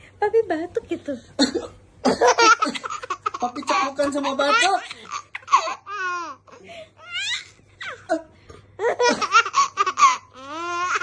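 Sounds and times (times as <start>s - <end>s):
young child laughing: 8.8s - 11.0s.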